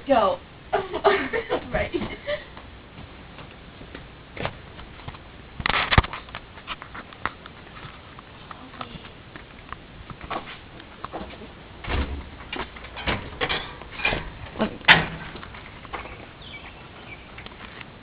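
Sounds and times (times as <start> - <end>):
footsteps: 1.9 - 17.9
handling rustles and knocks: 2.0 - 16.3.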